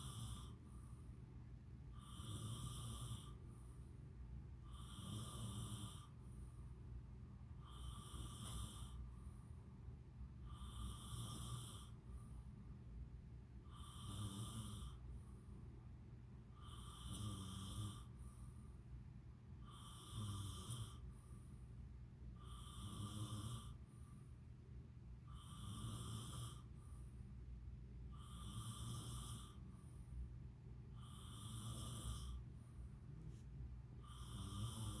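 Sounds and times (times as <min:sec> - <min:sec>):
whistling snoring: 0:02.0 - 0:03.4, 0:04.7 - 0:06.1, 0:07.6 - 0:09.0, 0:10.5 - 0:12.0, 0:13.7 - 0:15.0, 0:16.6 - 0:18.1, 0:19.7 - 0:21.0, 0:22.4 - 0:23.8, 0:25.3 - 0:26.7, 0:28.2 - 0:29.6, 0:31.0 - 0:32.4, 0:34.0 - 0:35.0.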